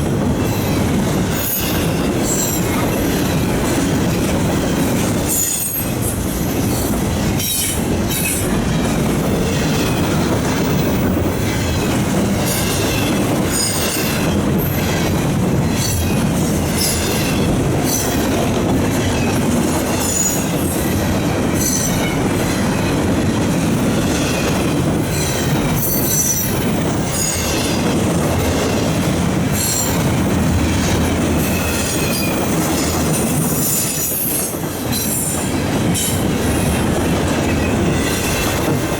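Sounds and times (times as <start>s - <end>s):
train wheels rumbling on rail: 0.0s - 38.9s.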